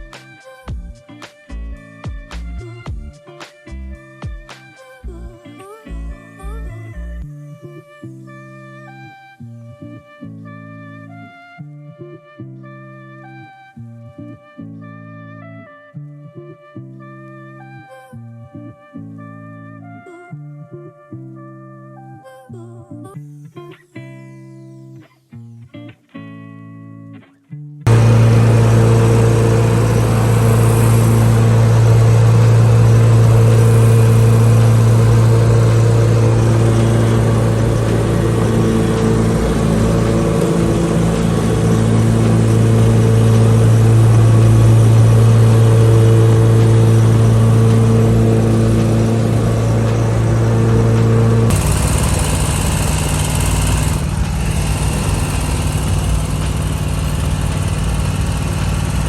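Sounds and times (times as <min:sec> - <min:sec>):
lawn mower engine running: 0:27.9 - 0:59.0.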